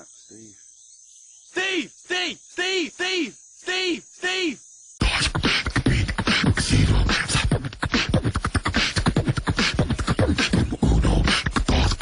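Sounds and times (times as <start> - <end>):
person beatboxing: 5.0 - 12.0.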